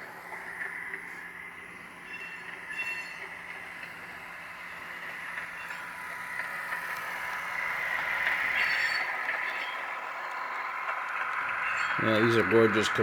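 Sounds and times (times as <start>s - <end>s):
rolling train sounds from small speaker: 0.0s - 13.0s
squeal: 0.4s - 6.6s, 8.5s - 10.6s, 11.4s - 12.6s.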